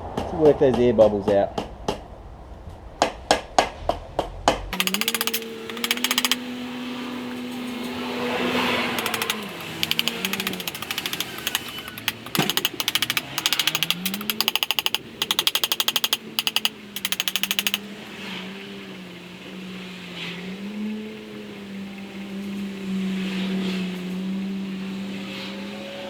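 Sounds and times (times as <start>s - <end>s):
rapid tapping on paint bucket: 4.8s - 6.4s, 9.0s - 17.8s.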